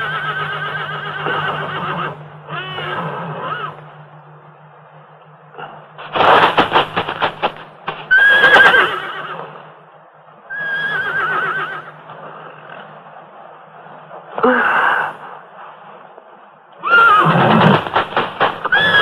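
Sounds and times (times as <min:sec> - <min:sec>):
horse whinnying: 0:00.0 - 0:03.8, 0:08.1 - 0:09.6, 0:10.5 - 0:12.0, 0:16.8 - 0:19.0
sharp knocks: 0:06.0 - 0:08.1, 0:17.4 - 0:19.0.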